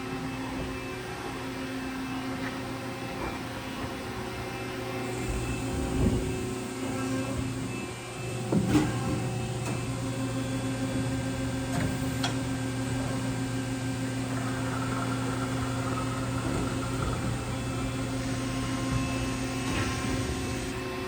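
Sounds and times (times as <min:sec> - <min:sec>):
low machine hum: 0:00.0 - 0:21.0
high-pitched whine: 0:13.6 - 0:21.0.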